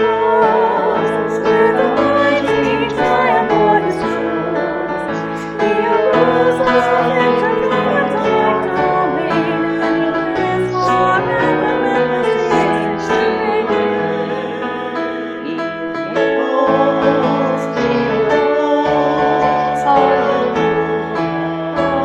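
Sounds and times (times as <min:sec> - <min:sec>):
person singing: 0:00.0 - 0:22.0
piano chords: 0:00.0 - 0:22.0.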